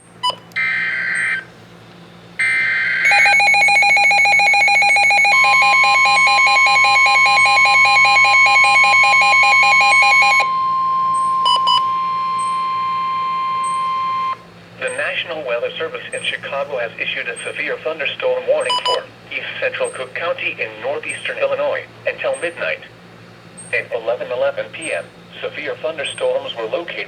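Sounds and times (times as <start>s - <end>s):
rapid pulsing alarm beeps: 0.0s - 1.5s, 2.3s - 15.3s, 18.6s - 19.1s
steady warning alarm tone: 0.0s - 16.4s, 17.2s - 19.1s
short beeps: 2.4s - 14.5s, 18.7s - 19.0s.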